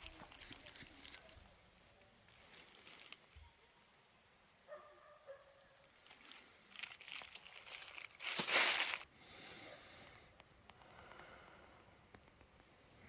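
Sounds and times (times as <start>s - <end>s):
crinkling and rustling handling: 0.0s - 1.6s, 2.2s - 3.5s, 5.8s - 9.1s.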